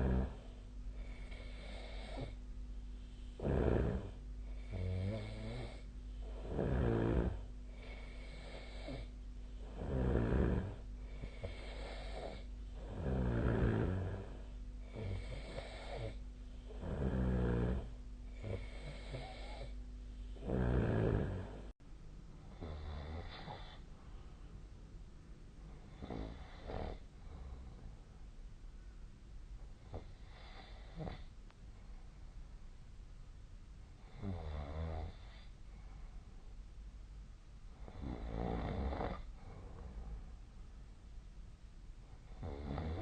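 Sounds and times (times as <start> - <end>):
person snoring: 0.0 - 2.4, 3.2 - 21.7, 22.5 - 23.8, 25.7 - 27.8, 34.0 - 35.5, 37.8 - 40.1, 42.3 - 43.0.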